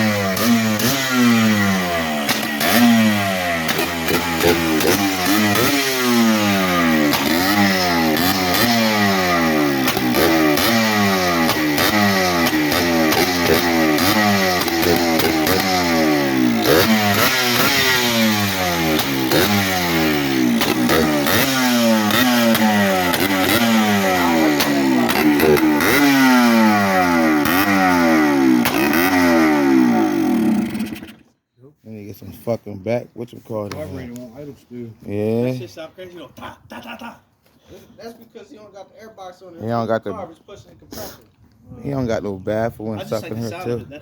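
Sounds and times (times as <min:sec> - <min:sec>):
two-stroke engine revving: 0:00.0 - 0:31.3.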